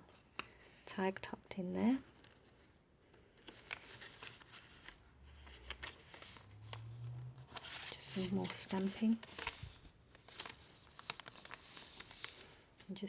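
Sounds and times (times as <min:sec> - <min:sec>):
paper pages rustling: 0:02.0 - 0:13.0.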